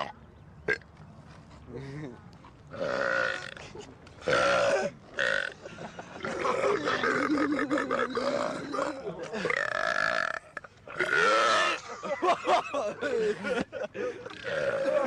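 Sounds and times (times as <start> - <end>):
man burping: 2.7 - 3.6, 4.2 - 5.6, 6.2 - 11.8, 14.3 - 15.0.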